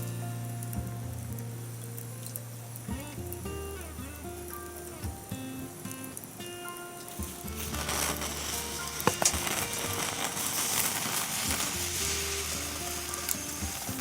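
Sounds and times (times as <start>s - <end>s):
food sizzling over fire: 0.0s - 14.0s
quiet background music: 0.0s - 14.0s
wood fire cracks: 7.0s - 14.0s.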